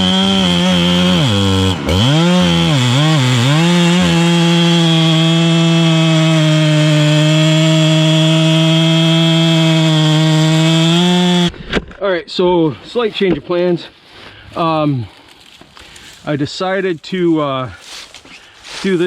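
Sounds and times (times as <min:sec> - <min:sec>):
chainsaw at full throttle: 0:00.0 - 0:11.6.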